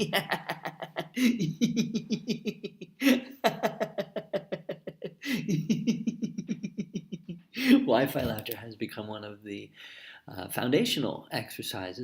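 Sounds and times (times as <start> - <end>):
man laughing in staccato pulses: 0.0 - 7.5.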